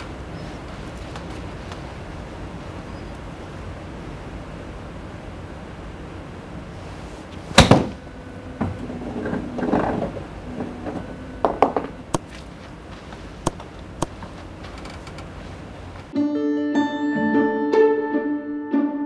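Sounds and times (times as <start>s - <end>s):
golf club striking ball: 7.5s - 8.0s.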